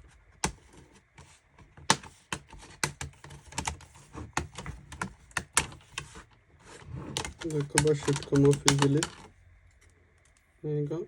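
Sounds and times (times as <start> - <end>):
plastic clips snapping: 7.2 - 9.3.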